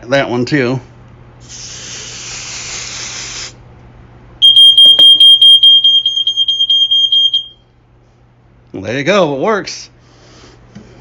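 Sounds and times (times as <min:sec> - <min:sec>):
aerosol spray hissing: 0:01.4 - 0:03.6
smoke alarm pulsing tone: 0:04.4 - 0:07.6.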